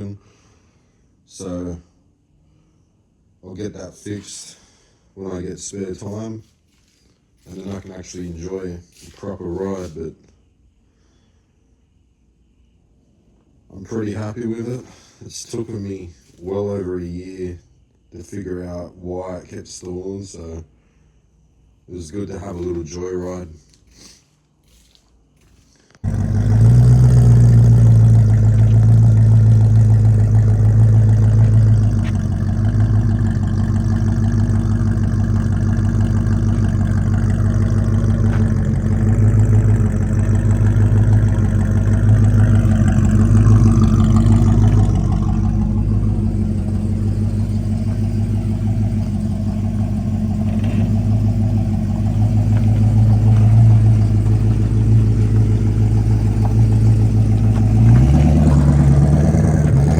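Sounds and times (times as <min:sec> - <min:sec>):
car engine droning: 0:07.4 - 0:10.0, 0:25.4 - 0:59.9.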